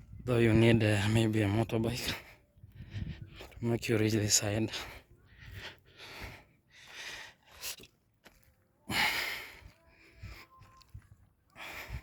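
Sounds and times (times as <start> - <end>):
person breathing noisily: 2.0 - 3.6, 4.7 - 7.8, 8.9 - 10.9, 11.5 - 12.0.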